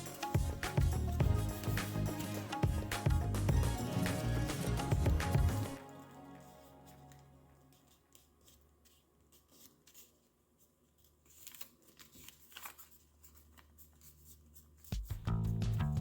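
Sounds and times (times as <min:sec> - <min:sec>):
paper being folded: 0:06.4 - 0:16.0.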